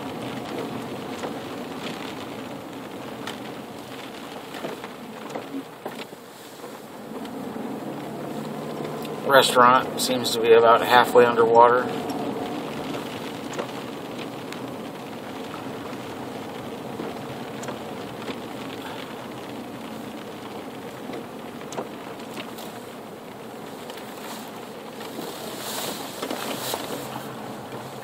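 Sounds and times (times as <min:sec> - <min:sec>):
car engine and road noise: 0:00.0 - 0:28.0.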